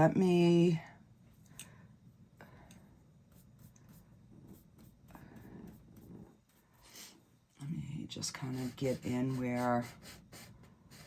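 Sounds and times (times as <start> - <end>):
low room hum: 0.0 - 11.0
paintbrush scratching on canvas: 3.3 - 7.2, 8.2 - 11.0.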